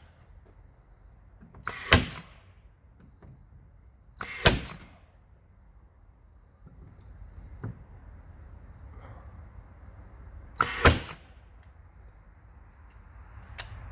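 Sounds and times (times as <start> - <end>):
nail gun shots: 1.6 - 2.5, 4.2 - 5.1, 10.6 - 11.3.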